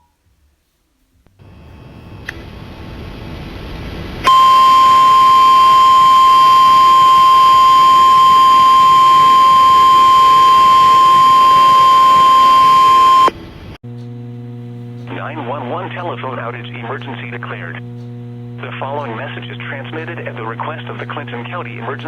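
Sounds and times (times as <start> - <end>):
high-pitched alarm tone: 4.2 - 13.3.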